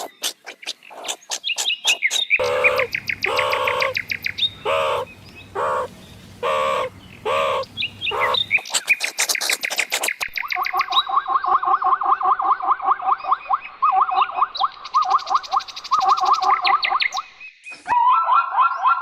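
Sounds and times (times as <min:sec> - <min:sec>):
short arched bird calls: 0:00.0 - 0:10.2
high falling bird peeps: 0:00.0 - 0:11.2.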